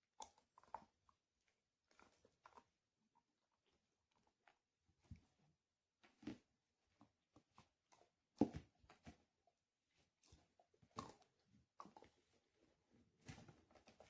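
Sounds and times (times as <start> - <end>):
dog chewing a bone: 1.9 - 2.8.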